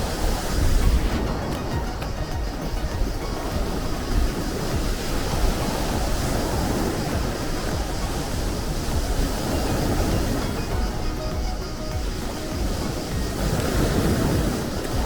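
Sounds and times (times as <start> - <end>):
sea waves and surf: 0.0 - 15.0.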